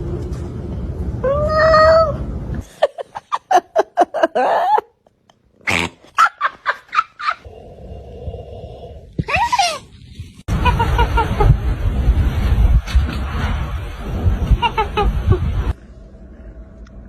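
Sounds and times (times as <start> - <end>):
low rumble: 7.5 - 17.0.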